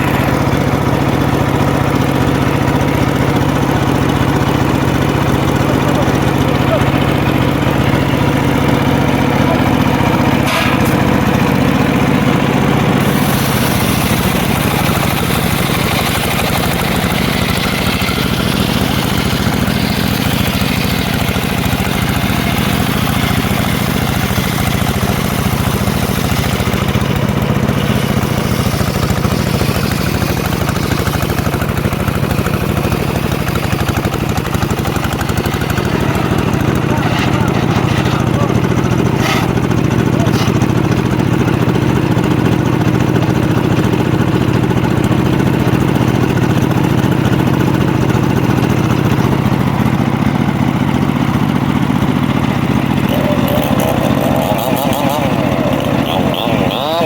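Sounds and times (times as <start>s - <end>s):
sawmill engine running: 0.0s - 57.0s
hissy harsh sound: 13.0s - 14.5s.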